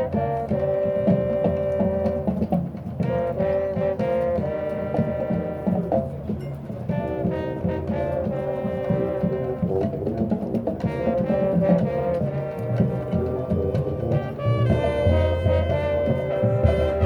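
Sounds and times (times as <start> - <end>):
marching band brass chords: 0.0 - 17.0.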